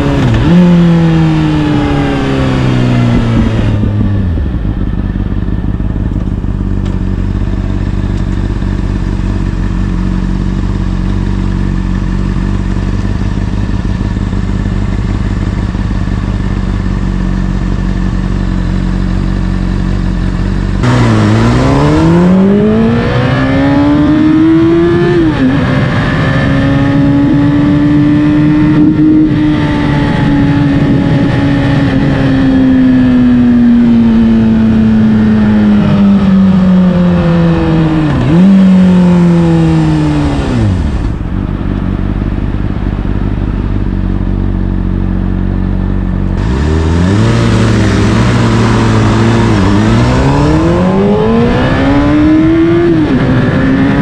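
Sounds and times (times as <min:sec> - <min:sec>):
motorcycle revving and pulling away: 0:00.0 - 0:54.0
motorcycle engine idling: 0:03.2 - 0:21.4, 0:40.6 - 0:46.4.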